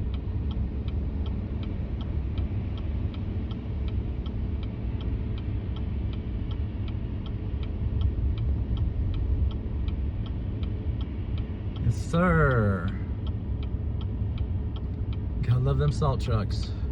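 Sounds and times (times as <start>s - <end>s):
road and engine rumble: 0.0s - 16.9s
sharp even ticking: 9.5s - 16.4s.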